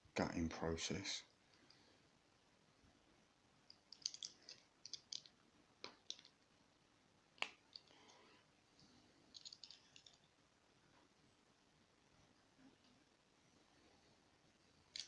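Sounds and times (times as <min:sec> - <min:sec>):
lock parts clicking: 0:03.7 - 0:05.3, 0:09.3 - 0:10.2.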